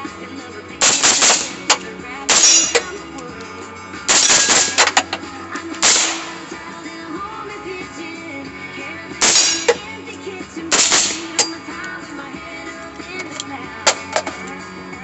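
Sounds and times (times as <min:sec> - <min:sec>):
background music: 0:00.0 - 0:15.0
gunshots: 0:00.8 - 0:03.0, 0:04.1 - 0:05.0, 0:05.8 - 0:06.6, 0:09.2 - 0:09.8, 0:10.7 - 0:11.5.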